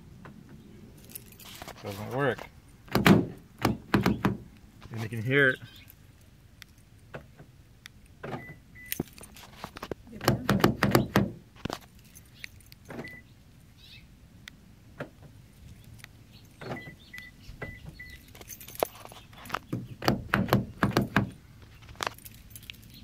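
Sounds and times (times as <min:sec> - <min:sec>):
keys rattling: 0:01.0 - 0:02.4, 0:08.8 - 0:09.9, 0:11.7 - 0:13.2, 0:18.0 - 0:23.0
car door lock clicking: 0:02.9 - 0:04.4, 0:10.2 - 0:11.4, 0:16.6 - 0:18.2, 0:19.6 - 0:21.4.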